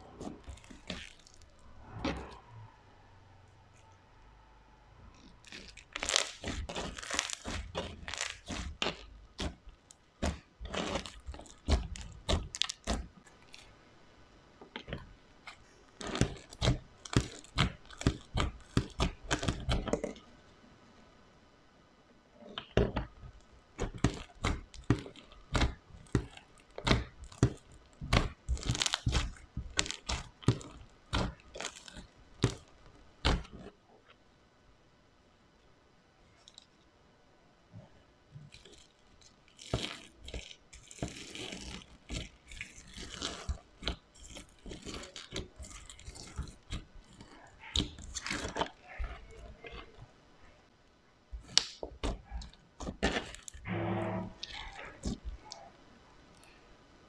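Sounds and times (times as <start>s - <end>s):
slime crackling and popping: 0.0s - 2.5s, 5.1s - 13.8s, 14.7s - 20.2s, 22.4s - 33.8s, 38.4s - 50.1s, 51.3s - 55.7s.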